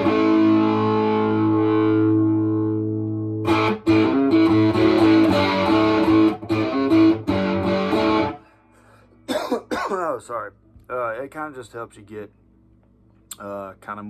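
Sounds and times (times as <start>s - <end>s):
distorted electric guitar chords: 0.0s - 8.5s.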